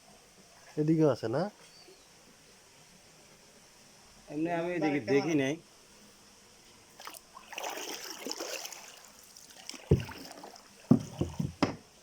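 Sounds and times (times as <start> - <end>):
stream water splashing: 6.9 - 11.6
dull thumps: 9.9 - 10.3, 10.9 - 11.9.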